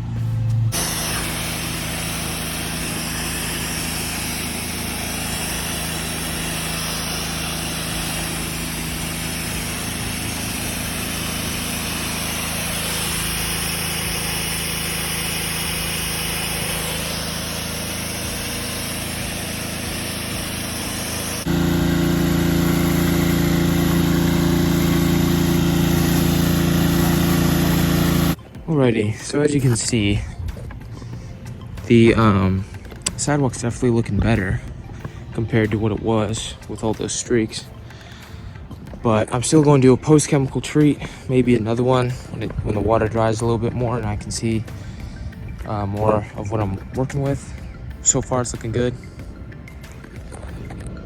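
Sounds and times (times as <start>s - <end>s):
pressure washer engine drone: 0.0s - 51.0s
high-pressure water spray hiss: 0.7s - 28.4s.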